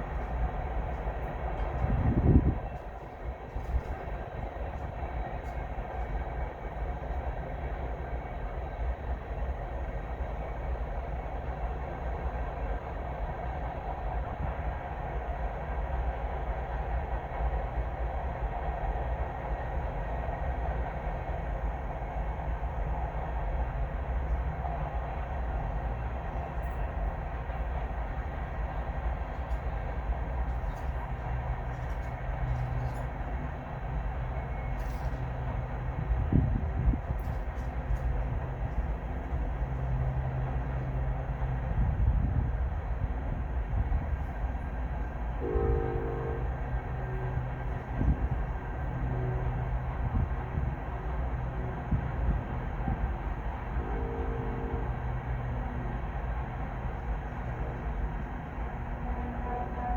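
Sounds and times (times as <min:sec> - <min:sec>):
freight train wheels rumbling: 0:00.0 - 0:59.9.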